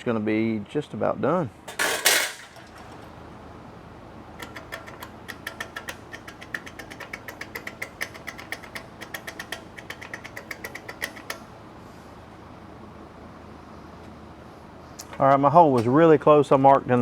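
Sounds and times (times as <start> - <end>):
steady shop hum: 0.0 - 17.0
rapid metallic clicks: 4.0 - 11.8.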